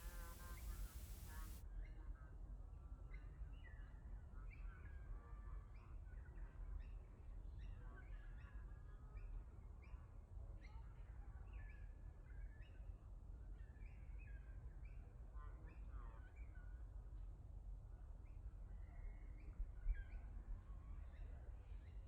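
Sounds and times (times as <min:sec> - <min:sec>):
faint birdsong: 0:00.0 - 0:01.6.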